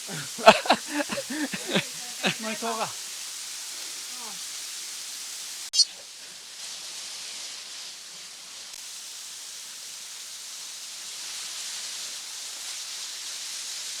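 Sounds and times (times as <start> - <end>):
waterfall rushing: 0.0 - 2.9.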